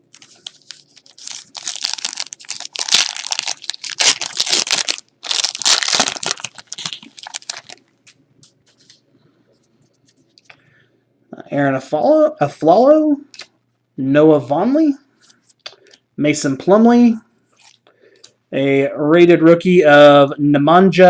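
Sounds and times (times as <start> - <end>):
cards rustling: 0.0 - 9.0
card pack wrapper tearing: 0.1 - 7.8.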